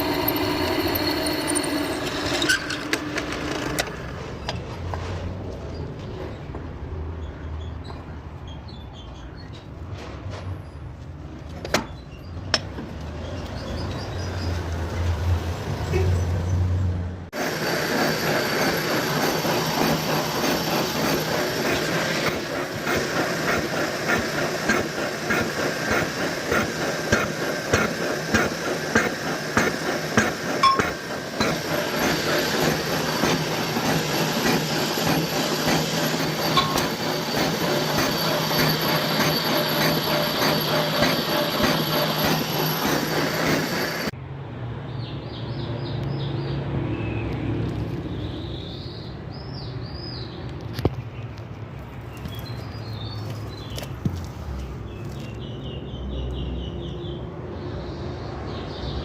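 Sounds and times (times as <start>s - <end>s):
steady machine whine: 0.0s - 4.7s, 17.4s - 44.2s
rough rattling cutting noise: 0.0s - 5.1s, 17.4s - 44.1s
lathe low hum: 0.0s - 5.8s, 16.8s - 44.2s.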